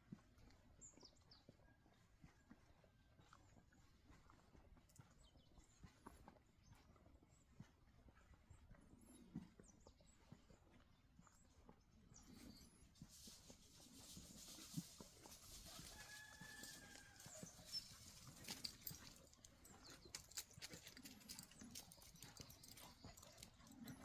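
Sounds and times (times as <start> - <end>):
paws ticking: 14.4 - 24.0.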